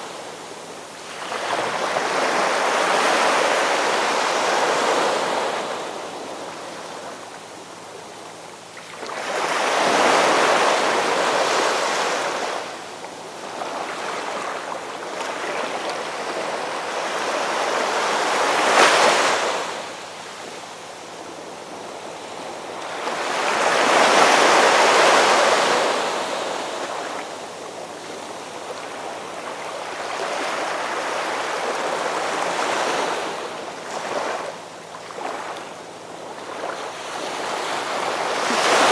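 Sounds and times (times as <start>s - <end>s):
ocean waves breaking: 36.3s - 38.9s.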